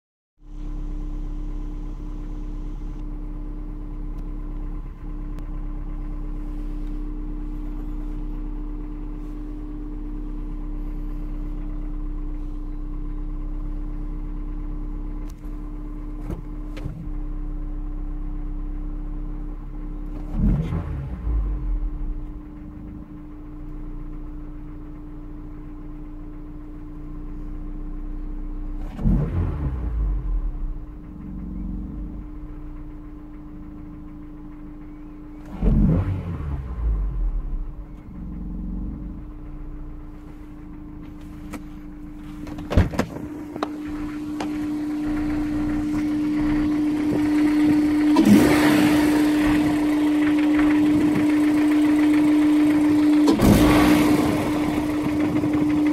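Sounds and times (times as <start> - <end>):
car engine idling: 0.4 - 55.9
engine throttle blips: 0.4 - 55.9.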